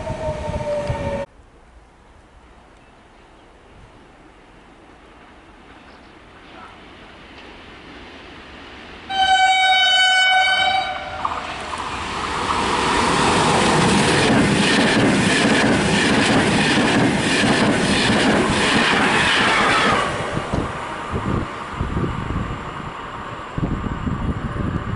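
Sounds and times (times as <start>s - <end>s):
train horn blast: 9.1s - 11.4s.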